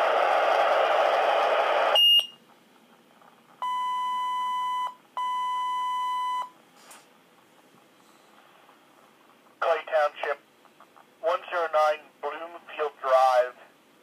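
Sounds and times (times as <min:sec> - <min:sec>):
long steady pager beeps: 0:02.0 - 0:02.4, 0:03.6 - 0:06.6
radio static hiss: 0:08.0 - 0:13.8.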